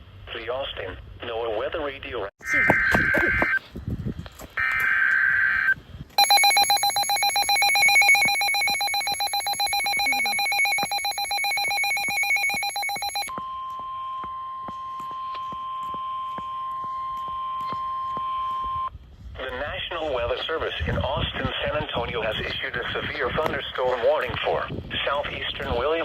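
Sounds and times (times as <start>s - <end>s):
steady warning alarm tone: 4.6s - 18.9s.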